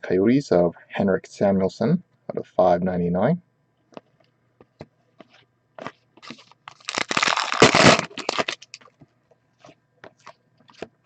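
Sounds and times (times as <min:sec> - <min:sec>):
wrapper crinkling: 0:05.8 - 0:08.9.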